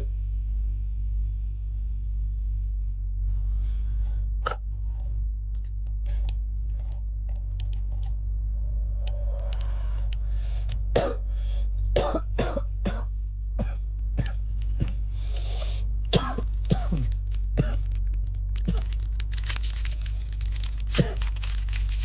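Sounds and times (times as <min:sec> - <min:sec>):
packaging crackling and squeaking: 0:16.4 - 0:22.0
plastic wrap crinkling: 0:16.4 - 0:22.0.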